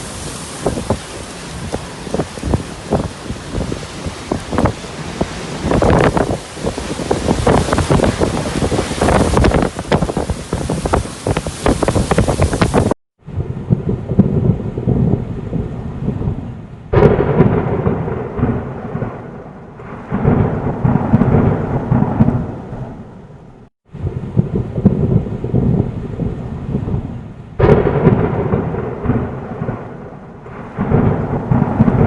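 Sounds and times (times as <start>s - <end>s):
heavy rain hitting a surface: 0.0s - 13.0s, 24.4s - 32.0s
deep rumbling thunder: 0.0s - 32.0s.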